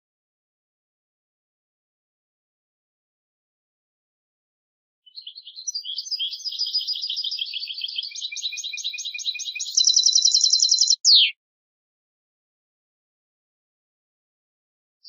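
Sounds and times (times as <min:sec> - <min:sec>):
finch singing twitters and trills: 0:05.1 - 0:11.3.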